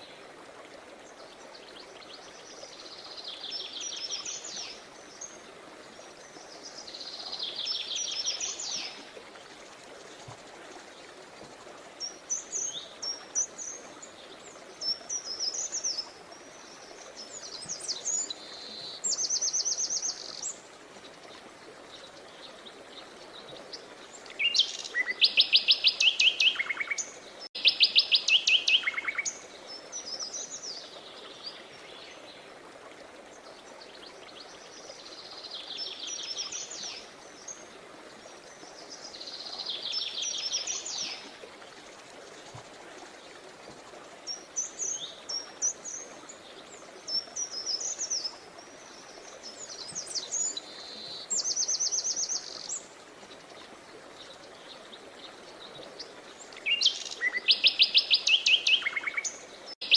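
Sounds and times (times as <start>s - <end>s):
flowing water hiss: 0.0s - 59.9s
songbirds singing: 9.9s - 32.6s, 43.0s - 59.9s.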